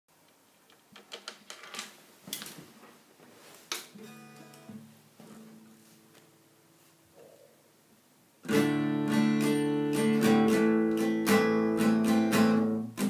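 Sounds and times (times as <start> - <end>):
acoustic guitar chord ringing: 4.0 - 6.7, 8.4 - 13.0.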